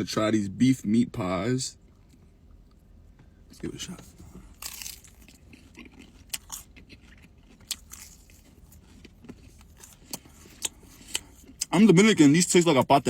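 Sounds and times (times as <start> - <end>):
chewing crunchy pastry: 3.8 - 12.0.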